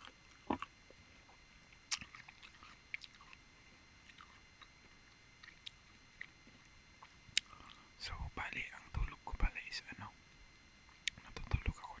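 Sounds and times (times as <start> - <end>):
person chewing: 0.0 - 6.4, 7.0 - 7.8
wet mouth clicks and smacks: 1.9 - 3.4, 5.4 - 6.4, 11.0 - 11.8.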